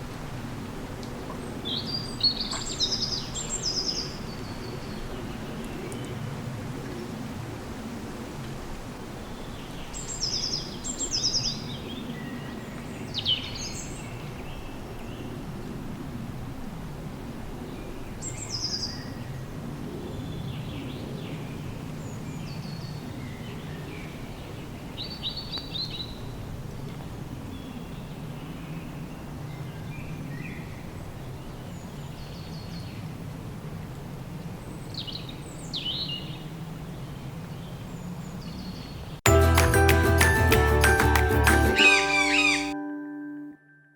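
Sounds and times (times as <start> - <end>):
small birds chirping: 41.7 - 42.8.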